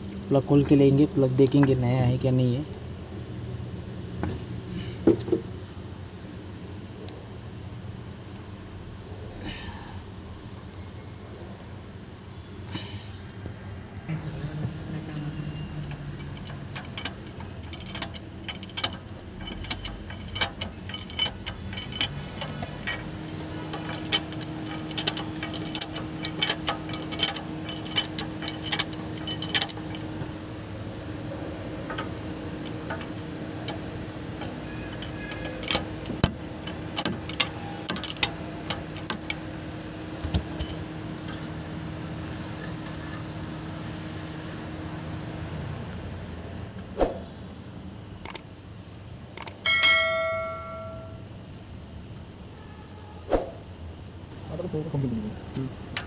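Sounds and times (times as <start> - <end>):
steady low hum: 0.0 - 56.0
hand tools clinking: 15.6 - 30.6, 31.2 - 41.5, 49.6 - 51.2.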